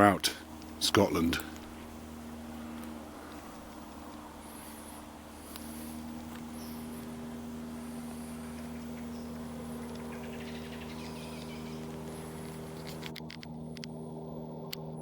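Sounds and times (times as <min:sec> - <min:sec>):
steady low hum: 0:00.0 - 0:15.0
sharp clicks: 0:09.8 - 0:14.0.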